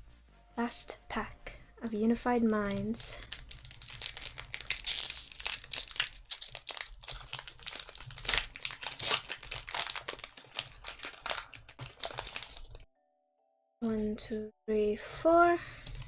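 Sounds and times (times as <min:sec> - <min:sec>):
foil wrapper crinkling: 0:02.5 - 0:12.9
foil tearing: 0:02.6 - 0:12.8.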